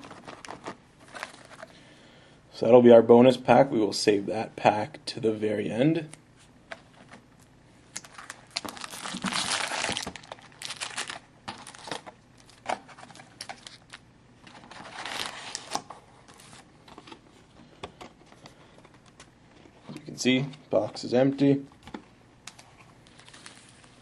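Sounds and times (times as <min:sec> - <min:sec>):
foil packs crinkling: 0:08.0 - 0:14.0, 0:14.6 - 0:16.6.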